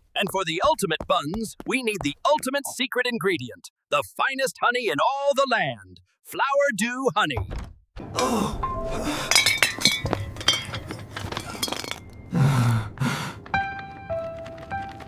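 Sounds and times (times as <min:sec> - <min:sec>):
background music: 0:08.0 - 0:11.1, 0:12.1 - 0:15.0
light clinks and knocks: 0:09.3 - 0:12.3.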